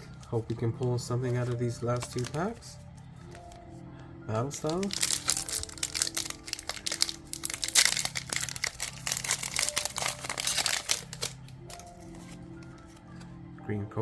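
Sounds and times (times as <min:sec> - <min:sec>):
foil pack crinkling: 0:01.4 - 0:02.6, 0:04.6 - 0:12.8.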